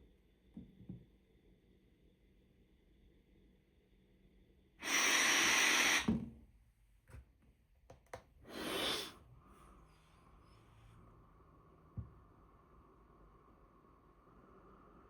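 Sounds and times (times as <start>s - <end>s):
air rushing through hose and mask: 4.8s - 6.2s, 8.5s - 9.2s.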